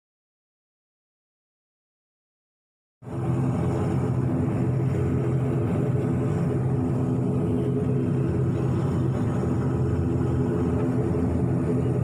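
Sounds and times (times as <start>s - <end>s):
airliner engines droning: 3.0s - 12.0s.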